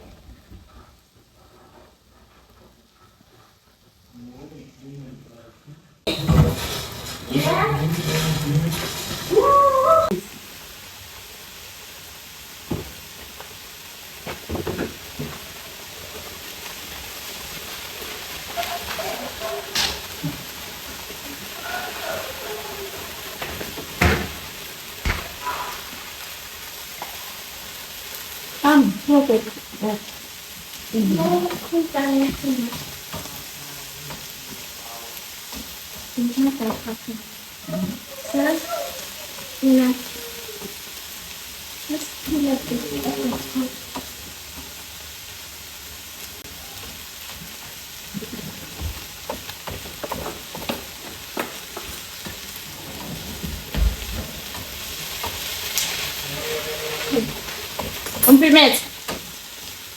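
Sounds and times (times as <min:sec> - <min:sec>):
food sizzling in a frying pan: 0:06.0 - 0:59.9
person speaking: 0:07.2 - 0:10.2, 0:58.2 - 0:58.9.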